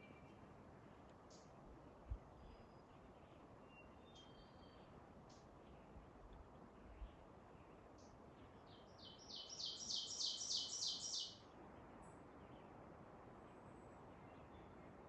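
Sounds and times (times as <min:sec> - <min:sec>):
faint bird chirps: 0:02.4 - 0:06.0, 0:08.0 - 0:11.4
songbird singing high notes: 0:09.0 - 0:11.4.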